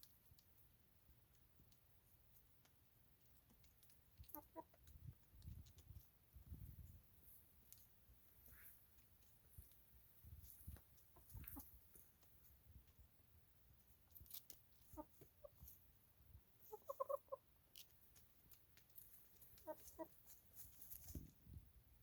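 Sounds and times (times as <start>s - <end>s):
hens clucking softly: 3.3s - 6.2s, 10.5s - 13.0s, 14.7s - 15.8s, 16.6s - 18.0s, 18.9s - 20.4s.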